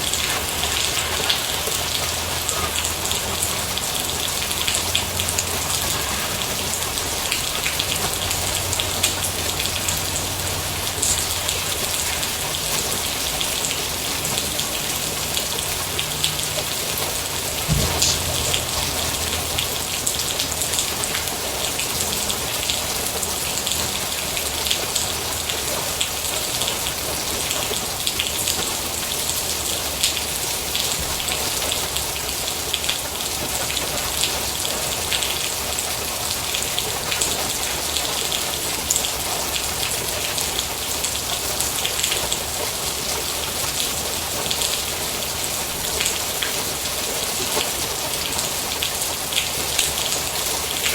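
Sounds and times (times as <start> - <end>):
raindrops ticking on a surface: 0.0 - 50.9
steady rain hiss: 0.0 - 50.9
loud thump: 17.7 - 20.1.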